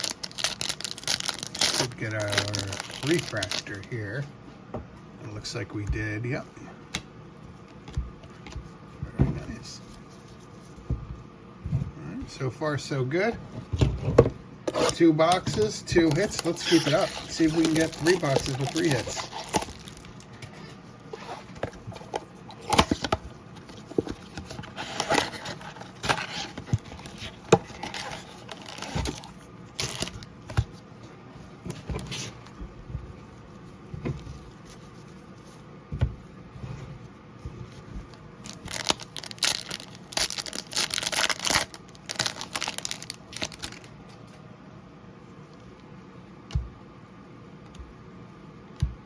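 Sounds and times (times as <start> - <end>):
cards being handled: 0.0 - 4.0, 14.8 - 32.6
wrappers tearing and crinkling: 0.0 - 4.0, 16.0 - 20.3, 24.6 - 30.3, 38.4 - 43.9.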